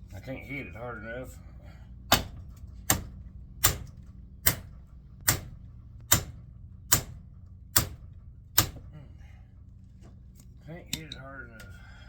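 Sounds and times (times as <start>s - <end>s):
hammer striking metal motor: 2.1s - 8.9s.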